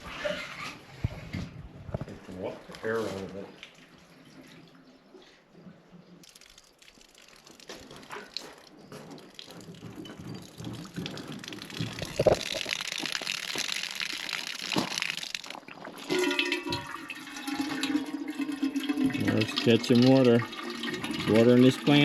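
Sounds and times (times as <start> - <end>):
water and air sputtering from valve: 6.2 - 22.0.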